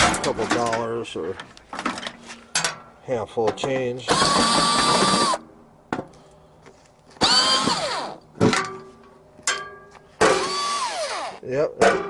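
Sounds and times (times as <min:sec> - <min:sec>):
cordless drill motor whine: 0:04.1 - 0:05.4, 0:07.2 - 0:08.2, 0:10.4 - 0:11.4.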